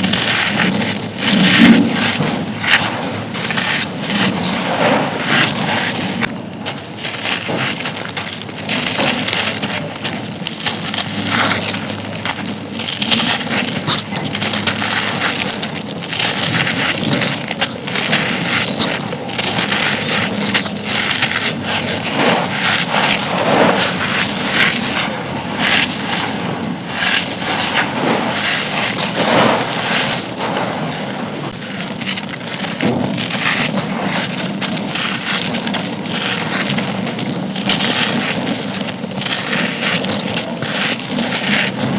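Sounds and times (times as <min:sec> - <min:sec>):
concrete slabs being crushed: 0:00.0 - 0:30.4.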